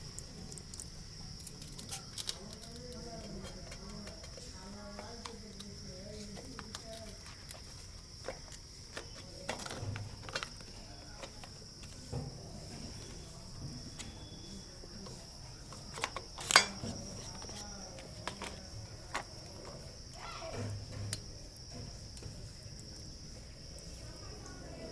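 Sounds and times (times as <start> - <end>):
crickets chirring: 0.0 - 24.9.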